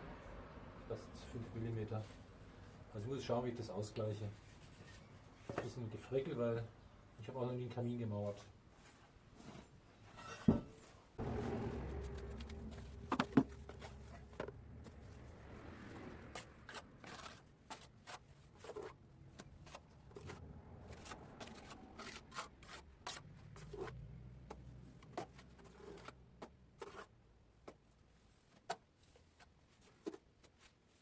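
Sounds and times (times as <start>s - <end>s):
trowel scraping mortar: 21.0s - 24.0s.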